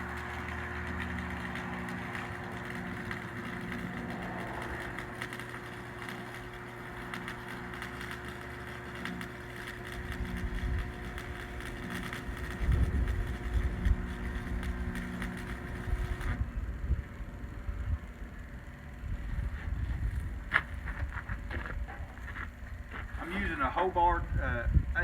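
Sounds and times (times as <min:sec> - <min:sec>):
welder transformer hum: 0:00.0 - 0:25.0
welding arc crackling sizzle: 0:00.0 - 0:25.0
wind rumbling on microphone: 0:12.3 - 0:14.9, 0:24.1 - 0:25.0.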